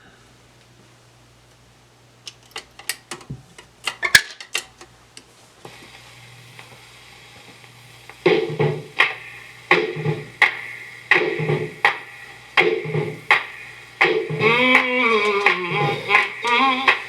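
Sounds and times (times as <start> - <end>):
stylus hiss: 5.6 - 17.0
record music: 5.7 - 17.0.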